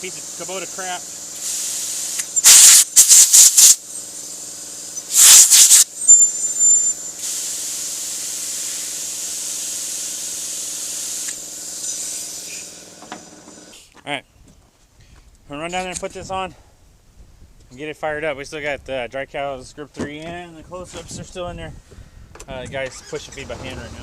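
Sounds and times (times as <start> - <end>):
hissing jet of air: 1.3 - 12.8.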